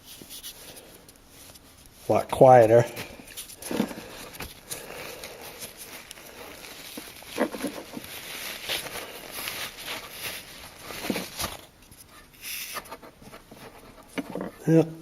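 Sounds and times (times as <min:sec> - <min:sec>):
handling taps and rubs: 0:06.9 - 0:08.8.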